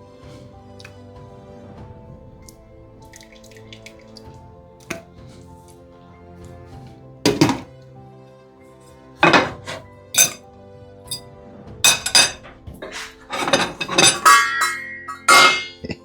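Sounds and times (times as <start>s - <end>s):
utensils and dishes clinking: 7.3s - 7.7s, 9.2s - 10.4s, 11.8s - 16.0s.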